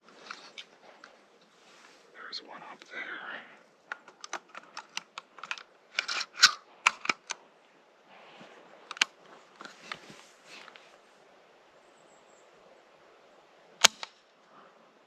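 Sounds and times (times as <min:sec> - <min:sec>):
sharp clicks and snaps: 0:03.9 - 0:07.4, 0:08.9 - 0:09.1, 0:13.8 - 0:14.2.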